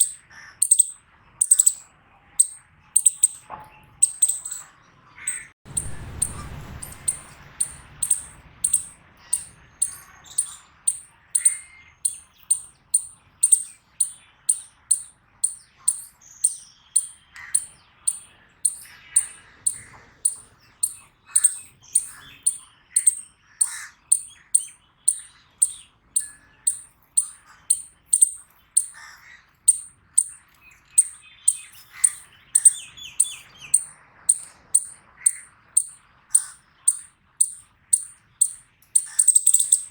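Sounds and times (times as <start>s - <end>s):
chipmunk chip calls: 0.0s - 3.4s, 4.0s - 39.9s
faint low chirps: 2.4s - 3.4s, 5.3s - 23.2s.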